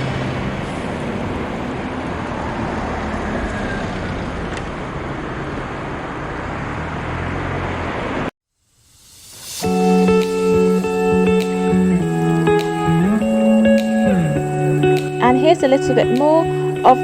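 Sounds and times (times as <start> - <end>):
traffic engine rumble: 0.0 - 1.8.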